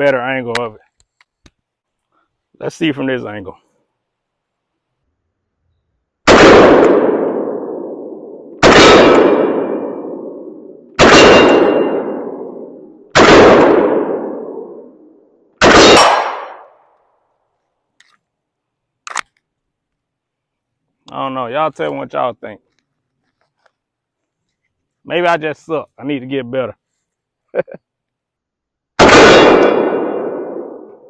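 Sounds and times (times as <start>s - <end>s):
pistol shots with ring-out: 6.2s - 14.8s, 15.6s - 16.7s, 29.0s - 31.0s.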